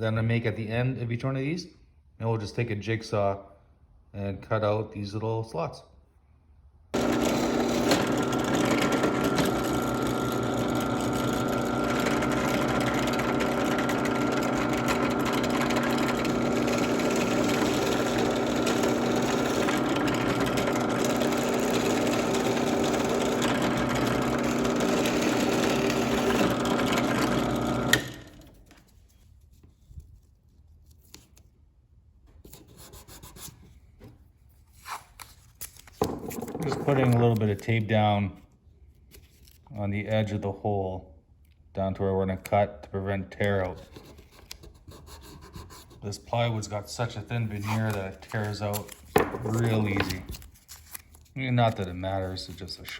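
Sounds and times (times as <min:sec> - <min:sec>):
jigsaw cutting plywood: 0:07.0 - 0:28.6, 0:36.0 - 0:37.4, 0:49.2 - 0:50.4.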